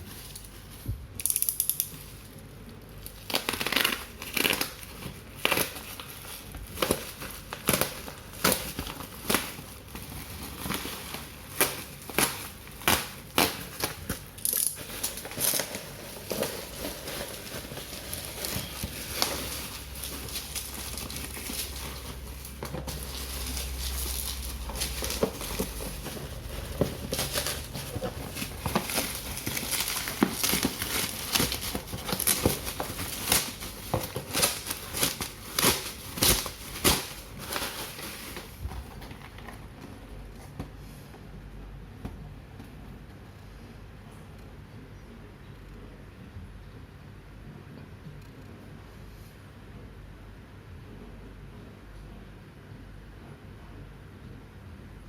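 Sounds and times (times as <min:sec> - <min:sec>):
packaging being handled: 0:00.0 - 0:40.6
crinkling and rustling: 0:00.0 - 0:41.3.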